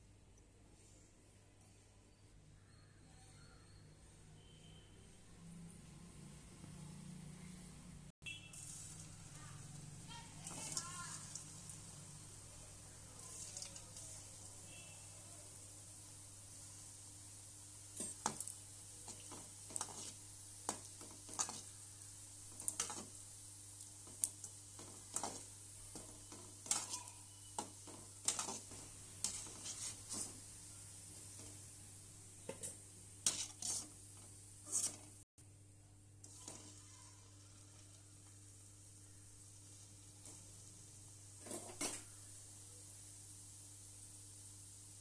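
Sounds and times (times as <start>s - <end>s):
faint frying sizzle: 4.4s - 45.0s
metal spoon scraping a pan: 13.2s - 14.9s, 18.0s - 21.8s, 22.5s - 23.2s, 24.0s - 30.5s, 33.2s - 35.2s, 36.2s - 38.1s.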